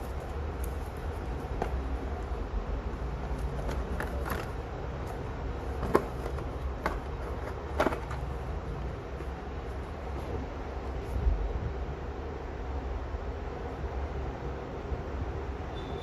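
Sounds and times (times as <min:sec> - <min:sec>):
clicks and taps of packaging: 0:05.8 - 0:08.3.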